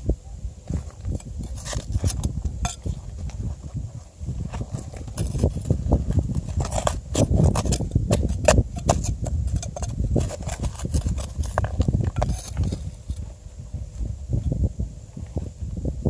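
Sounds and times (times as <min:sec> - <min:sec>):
steady low rumble: 0:00.0 - 0:16.0
stones knocking and scraping: 0:00.7 - 0:13.3.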